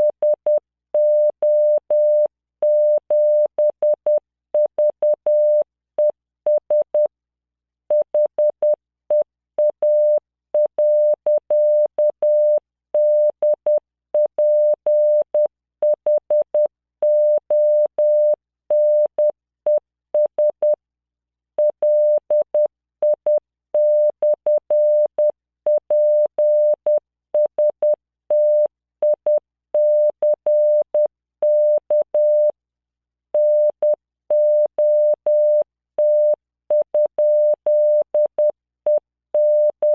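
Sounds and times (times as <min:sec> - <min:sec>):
morse code beeps: 0:21.6 - 0:32.5, 0:33.4 - 0:39.9.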